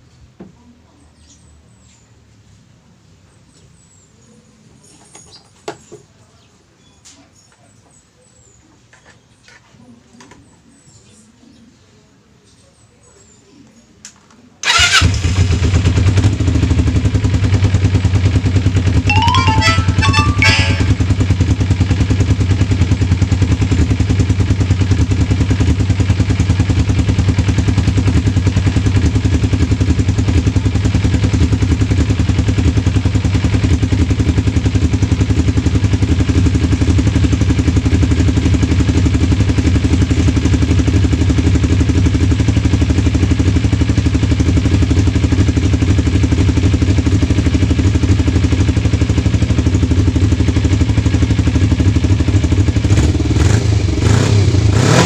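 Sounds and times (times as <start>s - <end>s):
motorcycle engine idling: 21.8s - 52.8s.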